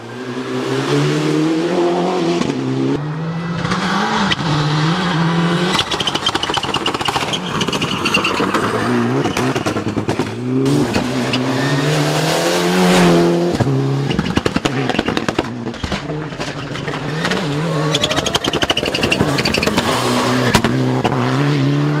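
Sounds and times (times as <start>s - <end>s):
simulated car engine revving: 0.0s - 6.0s.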